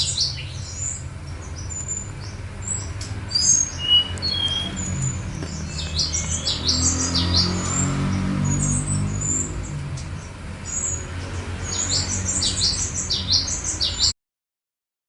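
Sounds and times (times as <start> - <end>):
songbird chirping and whistling: 1.6 - 7.8.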